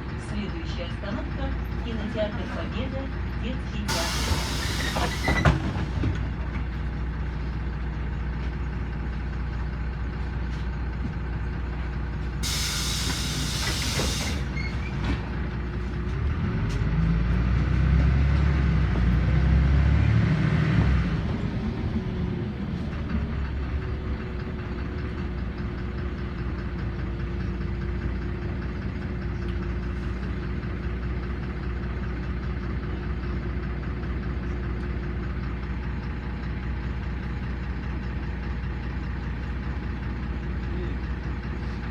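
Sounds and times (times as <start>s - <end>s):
bus engine drone: 0.0s - 41.9s
compressed air hiss: 3.9s - 5.4s, 12.4s - 14.4s.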